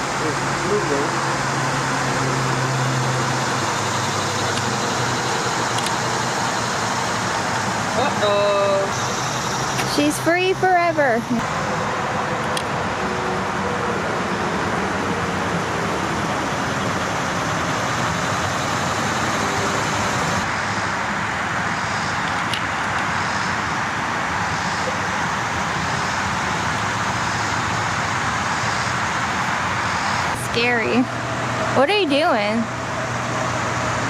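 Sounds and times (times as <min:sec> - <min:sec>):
hiss like distant road traffic: 0:00.0 - 0:34.0.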